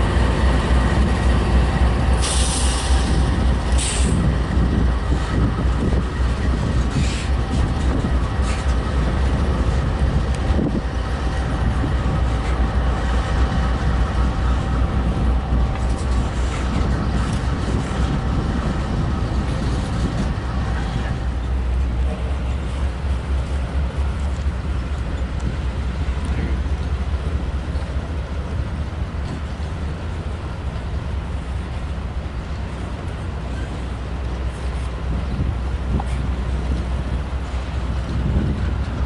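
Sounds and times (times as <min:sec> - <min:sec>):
freight train cars rumbling: 0:00.0 - 0:39.0.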